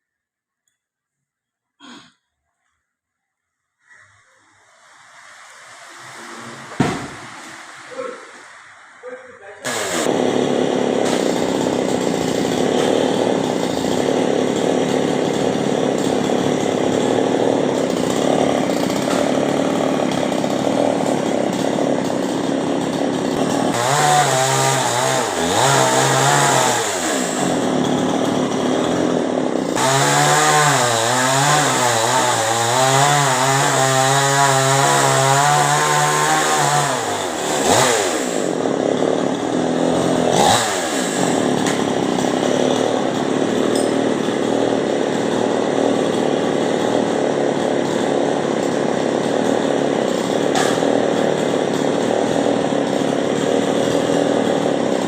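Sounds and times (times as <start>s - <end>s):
chainsaw running: 9.6s - 55.0s.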